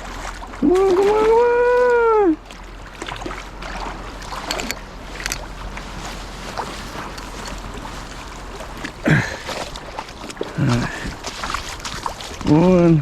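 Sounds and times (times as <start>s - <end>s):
river water flowing: 0.0s - 13.0s.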